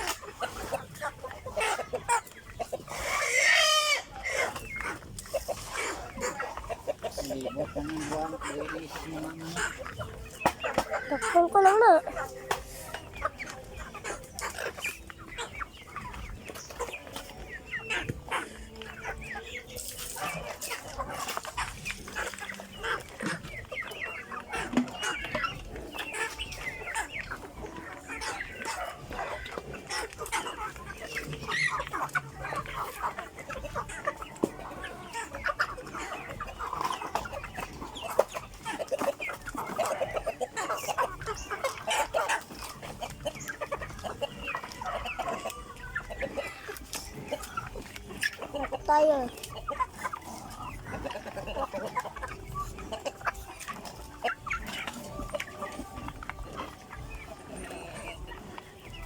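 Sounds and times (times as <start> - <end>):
chickens clucking: 0.0 - 59.0.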